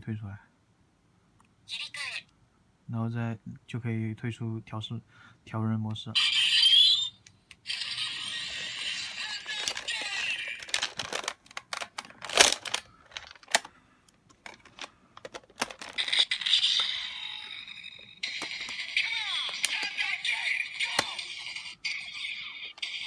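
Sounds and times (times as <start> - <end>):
toy electronic sound effects: 6.2 - 10.9, 15.8 - 23.0.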